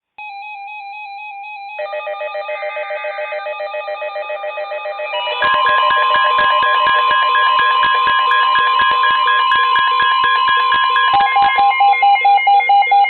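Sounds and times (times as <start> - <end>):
steady high warning tone: 1.8 - 13.0
fast-pulsing electronic beeping: 5.2 - 13.0.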